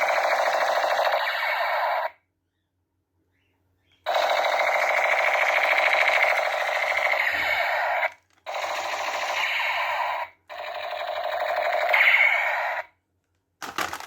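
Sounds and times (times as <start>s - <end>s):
toy gun machine-gun effect: 0.0s - 2.2s, 4.1s - 12.9s.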